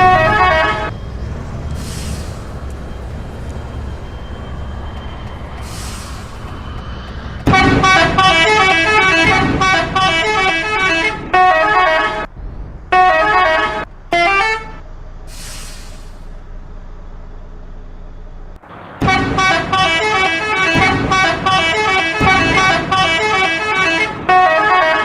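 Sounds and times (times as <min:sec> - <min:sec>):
multi-tone bus horn runs: 0:00.0 - 0:01.0, 0:07.4 - 0:12.3, 0:12.9 - 0:14.8, 0:19.0 - 0:25.0
engine idling hum: 0:00.0 - 0:23.8
air hiss: 0:01.7 - 0:02.6, 0:05.6 - 0:06.5, 0:15.3 - 0:16.3.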